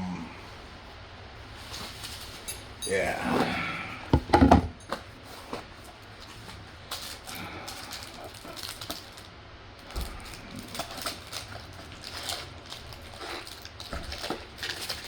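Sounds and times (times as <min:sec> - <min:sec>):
soft thumps: 0:04.2 - 0:04.8
cardboard and paper rustling: 0:04.2 - 0:15.0.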